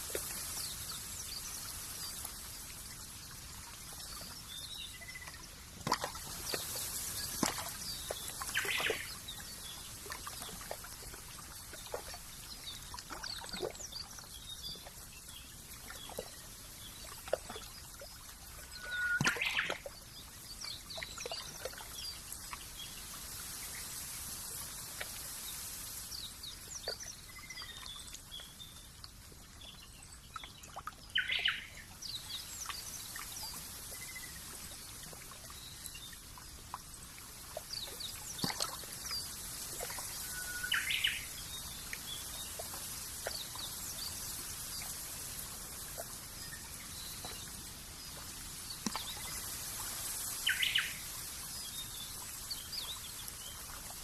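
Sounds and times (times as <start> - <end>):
trickling water: 0.0 - 54.0
water splashes: 0.0 - 54.0
bird chirps: 18.8 - 19.8, 40.2 - 41.3
steady high hiss: 38.1 - 54.0.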